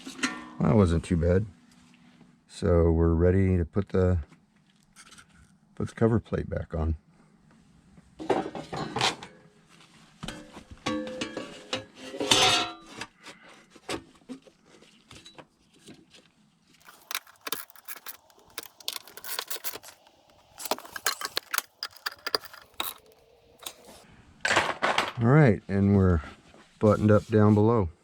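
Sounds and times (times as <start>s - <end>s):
metal clinks and rattles: 16.8s - 24.0s.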